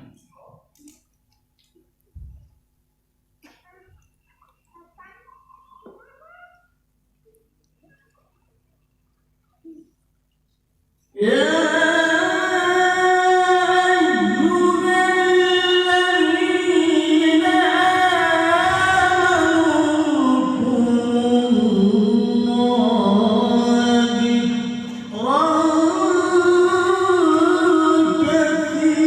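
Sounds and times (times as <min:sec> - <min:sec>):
man reciting melodically: 0:11.2 - 0:29.0.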